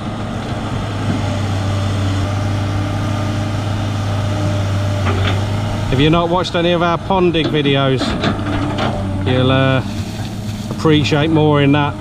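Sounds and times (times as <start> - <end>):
excavator diesel engine running: 0.0 - 12.0.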